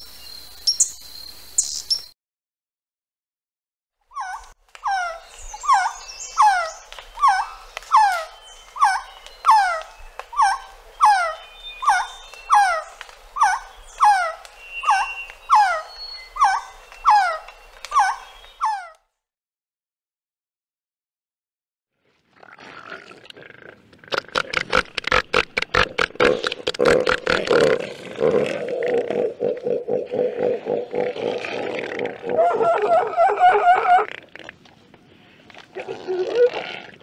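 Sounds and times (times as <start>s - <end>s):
dog-like animal yelping: 4.2s - 8.2s, 32.3s - 34.1s.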